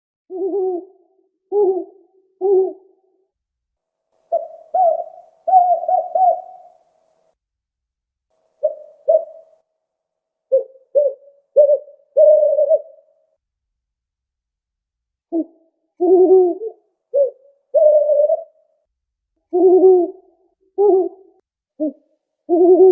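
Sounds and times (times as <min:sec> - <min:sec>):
owl hooting: 0:00.3 - 0:03.2, 0:04.3 - 0:07.1, 0:08.6 - 0:09.6, 0:10.5 - 0:13.2, 0:15.3 - 0:18.6, 0:19.5 - 0:22.9.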